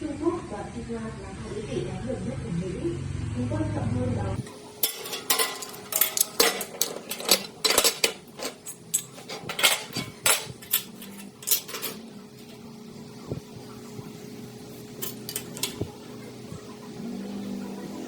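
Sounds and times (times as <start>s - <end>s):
hard objects clinking and clattering: 4.4s - 12.6s, 14.8s - 15.9s.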